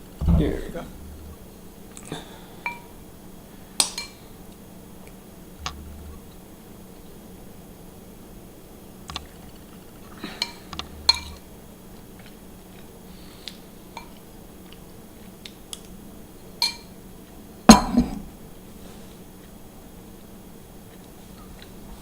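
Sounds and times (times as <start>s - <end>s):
loud knock: 0.2s - 1.4s, 17.7s - 18.4s.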